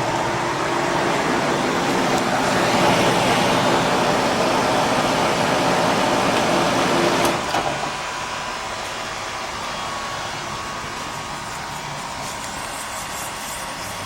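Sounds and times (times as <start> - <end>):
dehumidifier air rushing: 0.0 - 14.0
dehumidifier click: 1.0 - 7.9.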